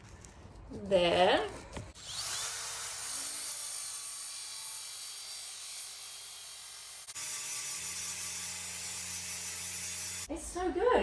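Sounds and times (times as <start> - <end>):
small grinder whining: 2.0 - 10.3.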